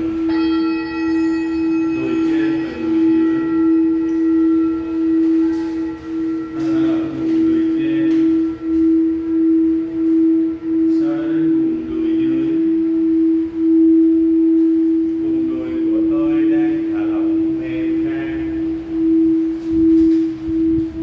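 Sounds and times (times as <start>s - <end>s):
singing bowl ringing tone: 0.0s - 21.0s.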